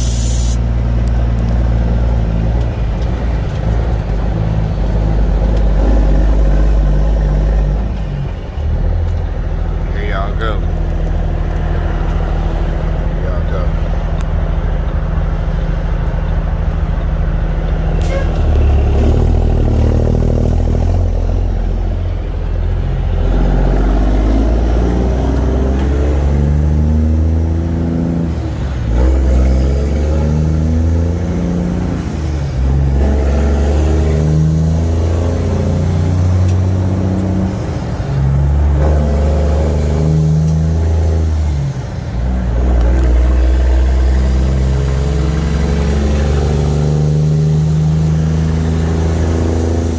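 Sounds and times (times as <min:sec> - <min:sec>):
diesel truck engine under load: 0:00.0 - 0:49.9.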